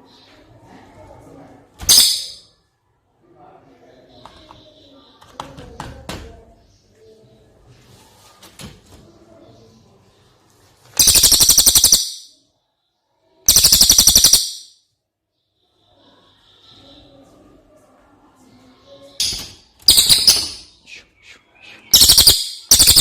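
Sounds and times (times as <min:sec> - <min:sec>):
bird rattling trills: 0:11.0 - 0:12.3, 0:13.5 - 0:14.7, 0:19.2 - 0:20.8, 0:21.9 - 0:23.0.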